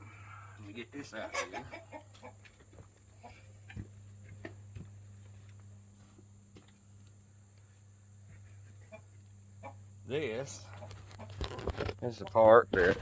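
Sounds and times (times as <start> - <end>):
chickens clucking: 0.1 - 5.5, 8.3 - 13.0.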